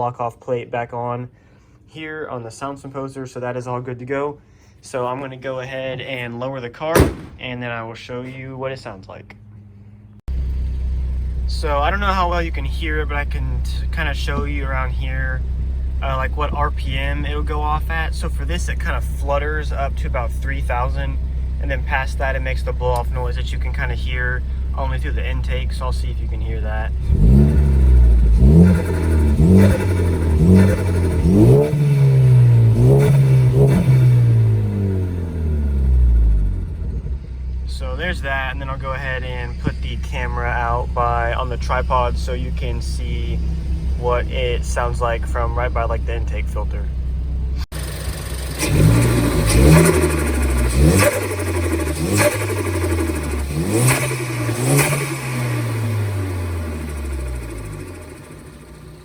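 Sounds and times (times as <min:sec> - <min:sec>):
car engine revving: 0:10.3 - 0:59.0
car engine revving in short blips: 0:26.9 - 0:37.3, 0:47.6 - 0:58.8.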